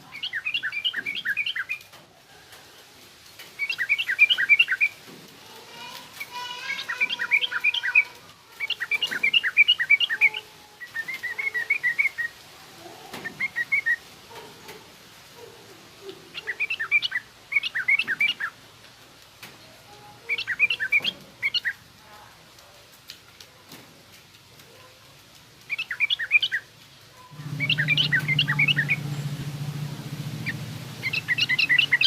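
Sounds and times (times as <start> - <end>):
bird chattering song: 0.1 - 1.9, 3.6 - 5.0, 6.2 - 12.3, 13.2 - 14.0, 16.3 - 18.5, 20.2 - 21.8, 25.6 - 32.0.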